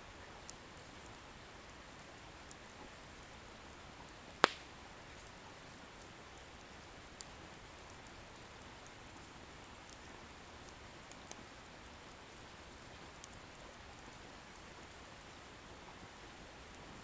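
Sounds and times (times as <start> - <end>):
faint fire ticks: 0.2 - 17.0
bonfire hissing: 4.2 - 5.3
firewood popping: 4.3 - 4.8.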